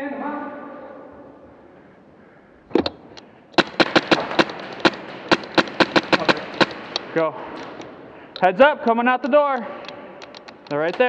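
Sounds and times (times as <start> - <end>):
airsoft gun shots: 3.6 - 7.8.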